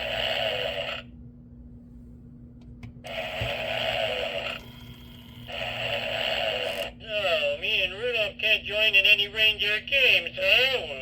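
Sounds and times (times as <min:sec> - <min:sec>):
toy snoring through speaker: 0:00.0 - 0:01.1, 0:03.1 - 0:07.0.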